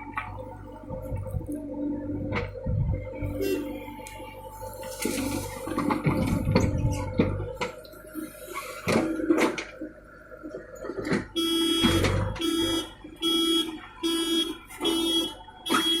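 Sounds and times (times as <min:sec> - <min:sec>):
reversing alarm beeping: 0:11.3 - 0:16.0.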